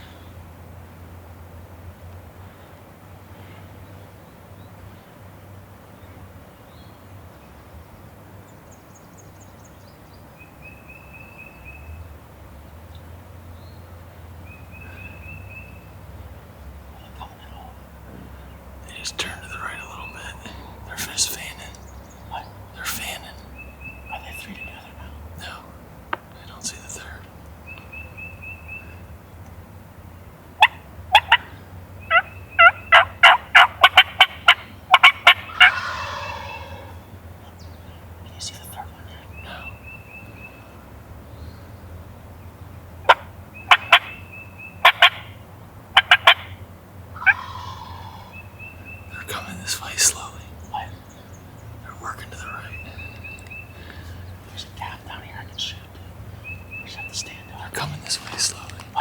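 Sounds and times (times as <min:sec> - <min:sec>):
songbirds chirping: 0:00.0 - 0:59.0
wild turkey yelping: 0:18.9 - 0:25.7, 0:30.6 - 0:37.1, 0:43.1 - 0:45.3, 0:46.0 - 0:46.5, 0:47.2 - 0:59.0
steady low rumble: 0:50.2 - 0:59.0.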